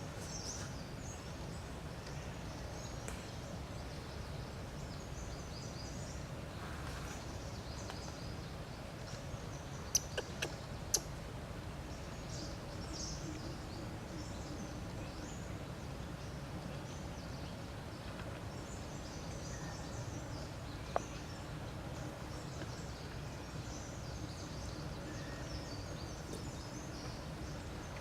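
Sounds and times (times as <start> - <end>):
birds chirping: 7.0 - 11.2, 11.8 - 28.0.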